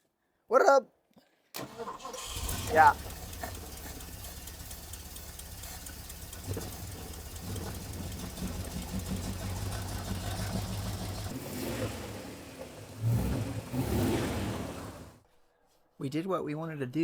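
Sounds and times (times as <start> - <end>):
car engine idling: 1.6 - 15.2.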